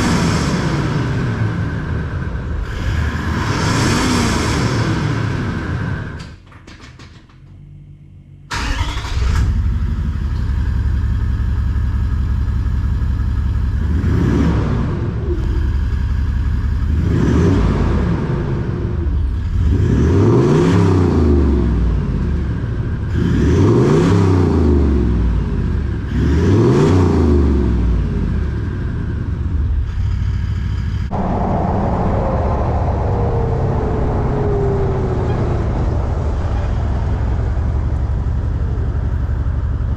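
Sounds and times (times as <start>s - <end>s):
engine revving with deep rumble: 0.0s - 6.2s, 8.5s - 39.9s.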